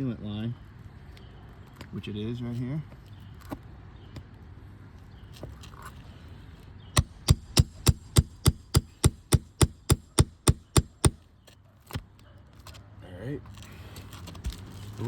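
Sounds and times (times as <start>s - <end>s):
hammer blows: 7.0s - 11.2s.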